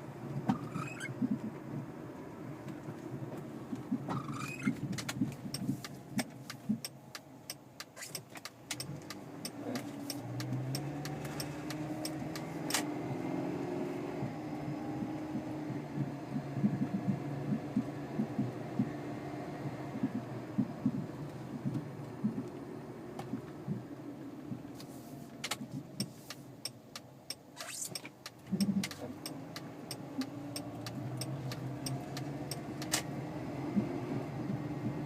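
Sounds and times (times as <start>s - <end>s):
car engine: 0.0s - 35.0s
suspension clunking: 0.0s - 35.0s
sharp clicks: 3.7s - 12.9s, 14.2s - 19.0s.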